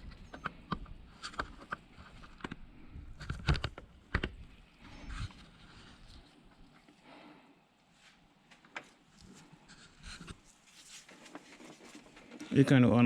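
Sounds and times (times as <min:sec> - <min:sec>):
light clicks and knocks of handling: 0:00.0 - 0:07.0.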